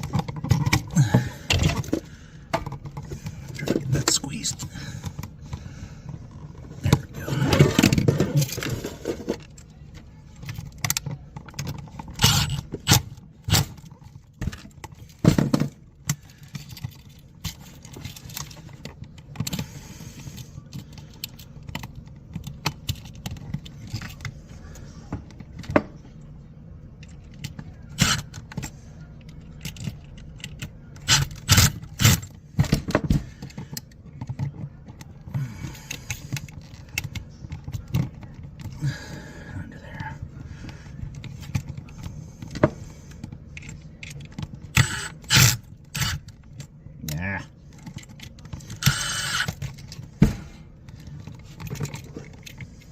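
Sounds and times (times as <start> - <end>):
tools clicking and knocking: 0.0 - 24.4, 27.0 - 38.8, 41.0 - 46.8, 47.6 - 52.9.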